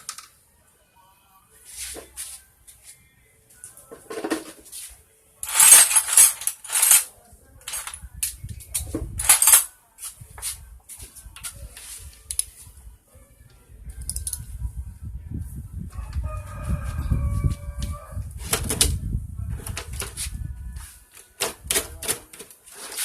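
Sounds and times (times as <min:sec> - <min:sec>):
metal parts and tools clattering: 0:05.4 - 0:07.1, 0:07.7 - 0:08.0, 0:08.7 - 0:09.7.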